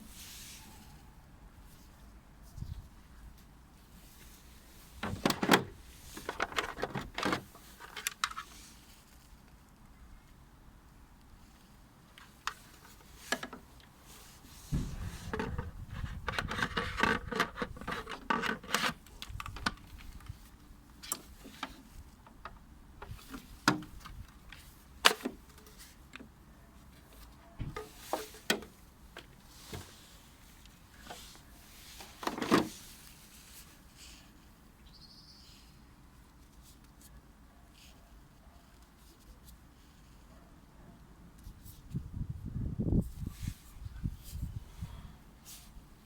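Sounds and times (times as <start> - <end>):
rubbing and rustling: 11.4 - 22.2, 26.7 - 34.6.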